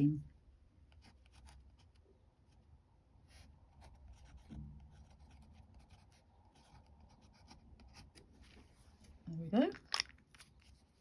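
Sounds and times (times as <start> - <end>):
pen scratching on paper: 3.3 - 8.2.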